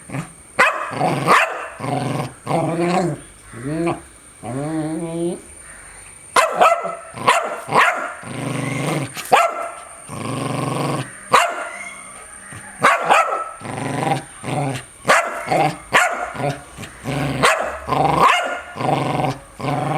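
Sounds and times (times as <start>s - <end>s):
dog growling: 0.0s - 5.5s, 6.9s - 19.9s
dog barking: 0.6s - 1.8s, 6.4s - 8.3s, 9.2s - 9.9s, 11.2s - 13.6s, 14.7s - 18.8s.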